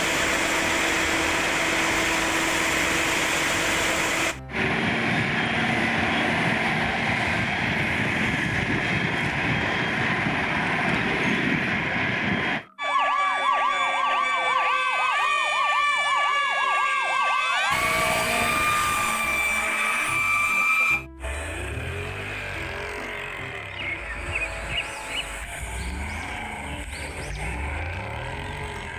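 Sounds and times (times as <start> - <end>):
wailing emergency siren: 0.0 - 11.0, 12.1 - 22.8
steady rumbling noise: 0.0 - 12.7
steady held siren tones: 12.5 - 21.8.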